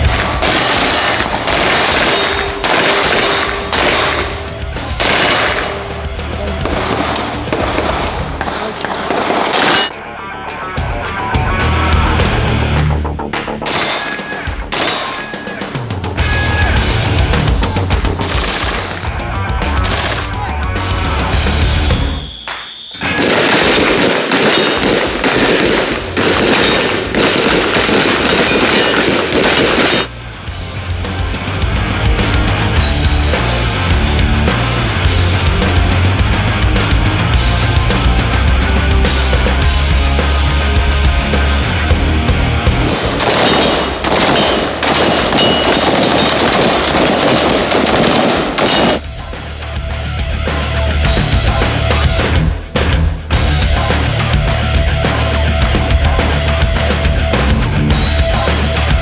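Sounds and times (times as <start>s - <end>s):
rapid gunfire: 0.0s - 10.0s, 13.4s - 15.7s, 18.1s - 19.2s, 19.8s - 20.4s, 23.0s - 30.2s, 42.8s - 49.1s.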